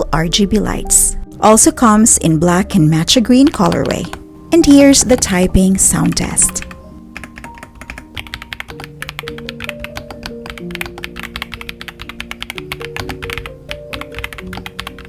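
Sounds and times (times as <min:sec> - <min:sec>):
background music with held notes: 0:00.0 - 0:15.0
mechanical keyboard typing: 0:03.4 - 0:15.0.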